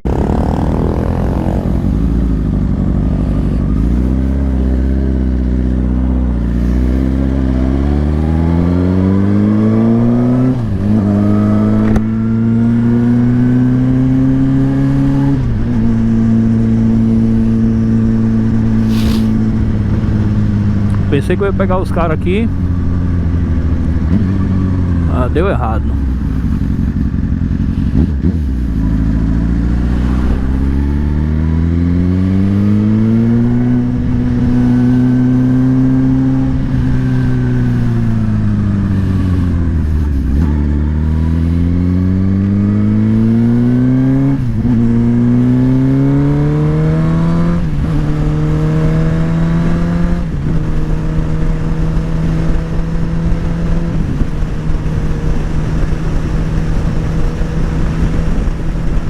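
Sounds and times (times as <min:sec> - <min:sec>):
motorcycle engine shifting gears: 0:00.0 - 0:59.0.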